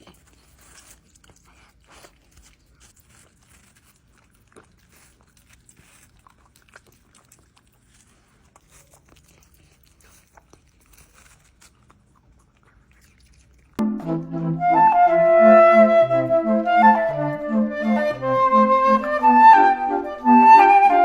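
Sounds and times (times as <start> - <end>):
dog clicks and crunches: 0.0 - 13.8.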